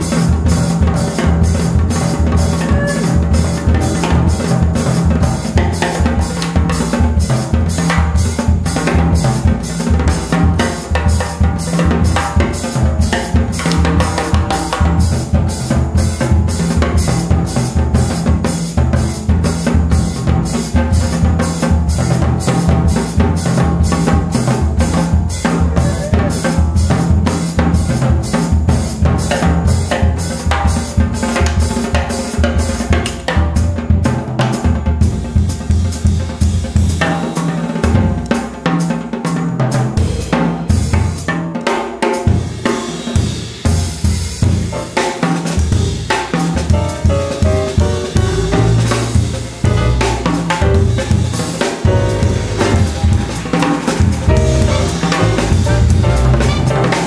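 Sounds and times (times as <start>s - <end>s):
drum kit rhythm: 0.0s - 57.0s
jazz group playing samba: 0.0s - 57.0s
bass line: 2.4s - 4.4s, 25.4s - 27.2s, 46.6s - 57.0s.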